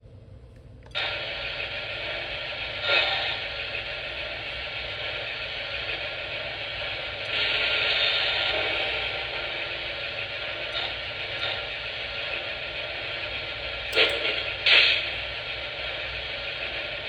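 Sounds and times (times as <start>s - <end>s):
steam hiss: 0.9s - 17.0s.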